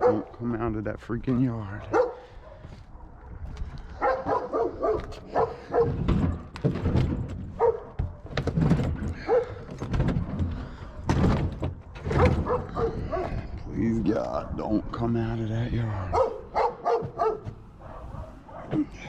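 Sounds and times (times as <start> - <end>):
dog barking: 0.0 - 0.4, 1.3 - 6.5, 7.6 - 8.3, 9.2 - 9.6, 12.0 - 13.4, 15.8 - 18.8.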